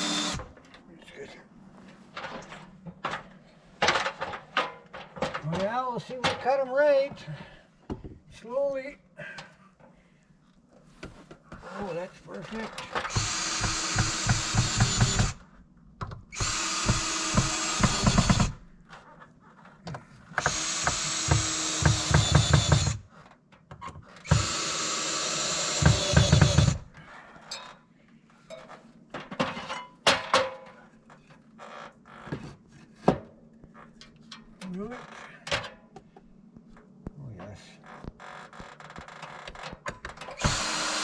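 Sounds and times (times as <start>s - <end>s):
power drill driving fasteners: 0.0s - 0.5s, 12.9s - 15.4s, 16.3s - 18.6s, 20.4s - 23.1s, 24.2s - 26.9s, 39.0s - 41.0s
small clicks and knocks: 38.0s - 40.4s.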